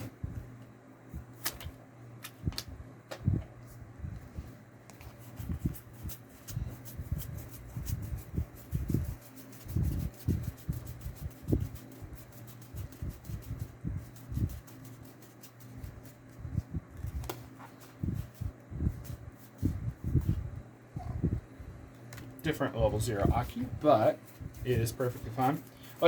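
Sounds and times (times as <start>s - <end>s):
low fan hum: 0.0s - 26.0s
cards tapping and rustling: 1.4s - 3.2s, 17.0s - 18.0s.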